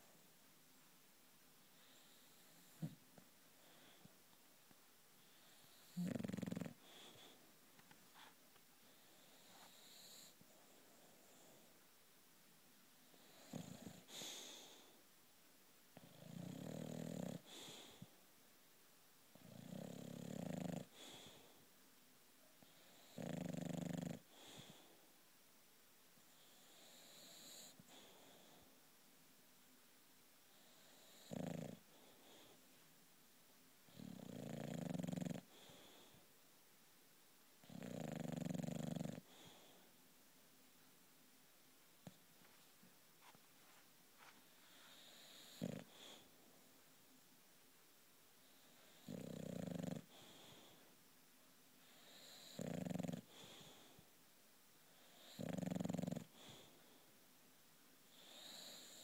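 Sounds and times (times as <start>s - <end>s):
dog snoring: 1.8s - 3.0s, 5.2s - 7.4s, 8.9s - 11.7s, 13.1s - 14.9s, 16.0s - 18.1s, 19.3s - 21.5s, 22.6s - 24.9s, 26.3s - 28.6s, 30.5s - 32.6s, 33.9s - 36.2s, 37.6s - 39.8s, 44.6s - 46.3s, 48.4s - 50.8s, 51.8s - 54.0s, 54.9s - 56.8s, 58.1s - 59.0s.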